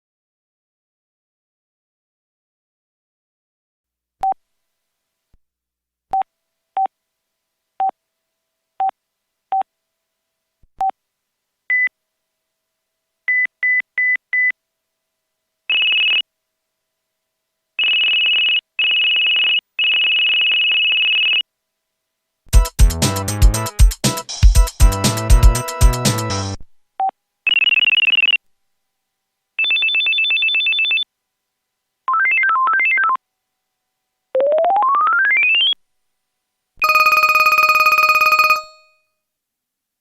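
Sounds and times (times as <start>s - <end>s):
phone electronic alert beeps: 27.5s - 28.4s, 34.4s - 35.8s, 36.8s - 38.9s.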